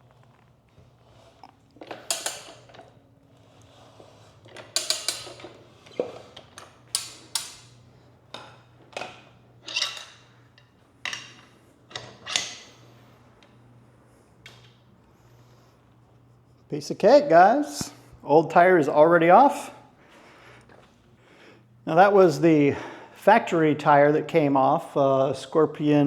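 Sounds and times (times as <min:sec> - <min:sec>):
faint steady hum: 0:00.0 - 0:26.0
metallic clanks and scrapes: 0:00.8 - 0:12.8.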